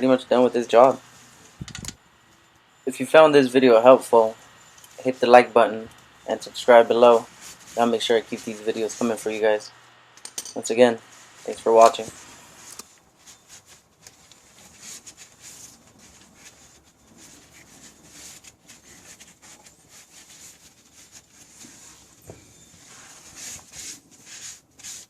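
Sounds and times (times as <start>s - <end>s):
rubbing and scuffing: 3.9s - 9.7s, 10.9s - 25.0s.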